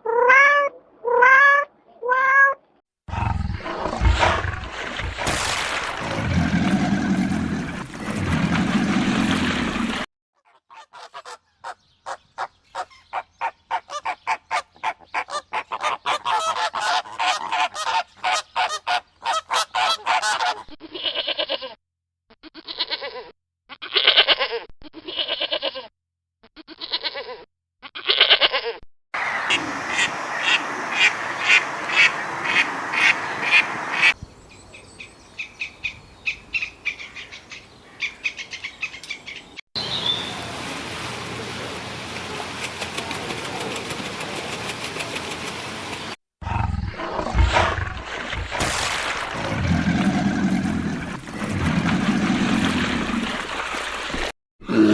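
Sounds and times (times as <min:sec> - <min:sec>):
birds calling rapidly: 0:10.5 - 0:20.6, 0:30.3 - 0:40.5.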